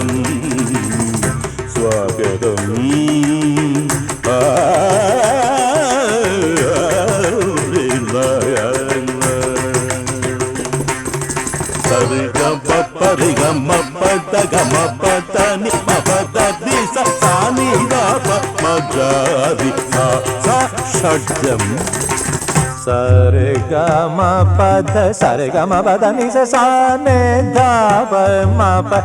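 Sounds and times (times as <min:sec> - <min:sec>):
fast percussion rhythm: 0:00.0 - 0:29.0.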